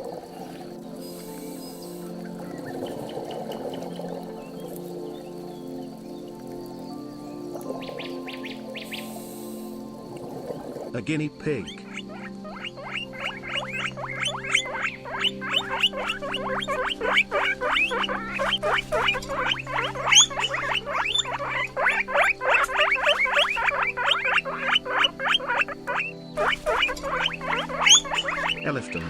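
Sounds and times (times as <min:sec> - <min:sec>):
guinea pig squeaking: 0:11.9 - 0:28.6.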